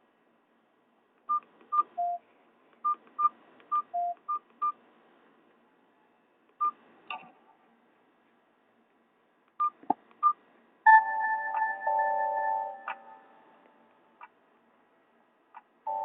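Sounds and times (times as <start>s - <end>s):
phone keypad beeps: 1.3s - 2.2s, 2.8s - 4.8s.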